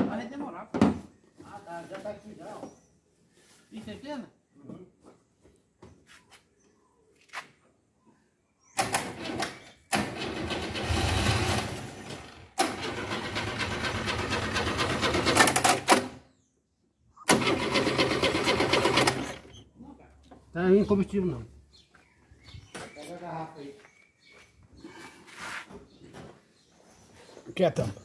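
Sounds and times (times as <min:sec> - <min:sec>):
starter motor cranking engine: 0:08.8 - 0:16.1, 0:17.3 - 0:19.6.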